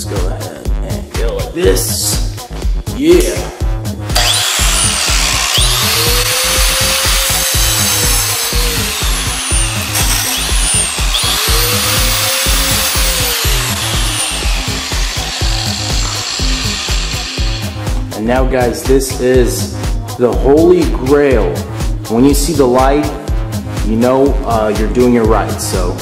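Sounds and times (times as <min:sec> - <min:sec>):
background music with steady beat: 0:00.0 - 0:26.0
angle grinder grinding phone: 0:04.1 - 0:18.2.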